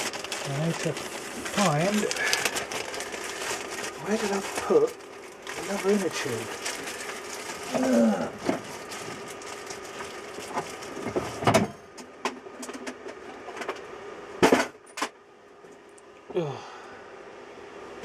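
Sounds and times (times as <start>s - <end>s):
person muttering: 7.7s - 8.4s, 16.3s - 16.8s.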